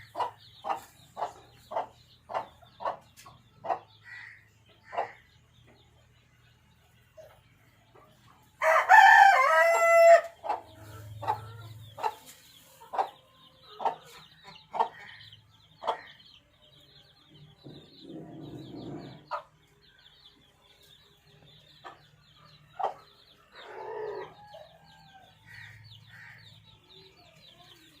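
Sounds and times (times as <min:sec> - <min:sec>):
chicken clucks: 0:00.0 - 0:04.0, 0:04.7 - 0:06.0, 0:09.8 - 0:16.2, 0:17.6 - 0:19.6, 0:21.8 - 0:25.8
rooster crowing: 0:08.6 - 0:10.3.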